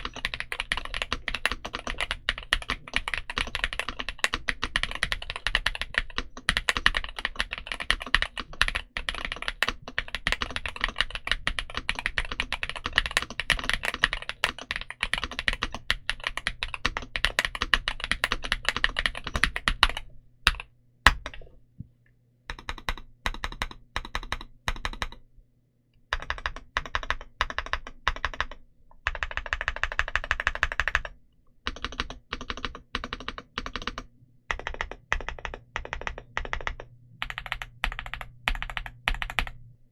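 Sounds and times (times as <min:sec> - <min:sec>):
mechanical keyboard typing: 0:00.0 - 0:21.5, 0:22.5 - 0:25.2, 0:26.1 - 0:39.6.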